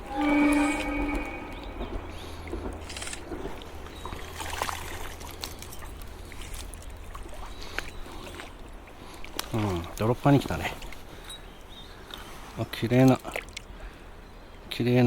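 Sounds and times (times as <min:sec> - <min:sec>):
river water flowing: 0:00.0 - 0:12.6
small splashes and knocks: 0:03.3 - 0:11.4, 0:13.0 - 0:13.8.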